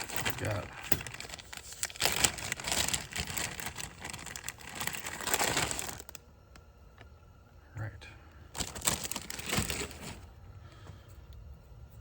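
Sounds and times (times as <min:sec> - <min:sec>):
packaging crinkling and rustling: 0:00.0 - 0:06.2, 0:08.5 - 0:10.3.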